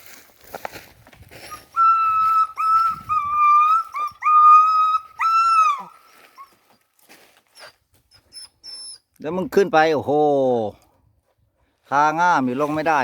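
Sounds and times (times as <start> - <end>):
dog whining high-pitched: 1.5 - 6.8, 7.6 - 9.1.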